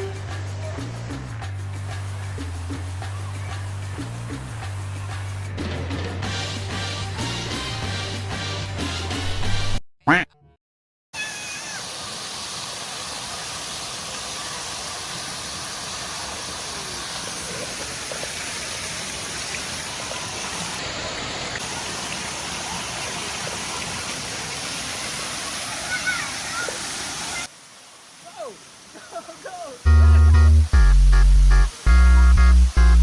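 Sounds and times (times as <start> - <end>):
flowing water rushing: 11.2 - 30.0.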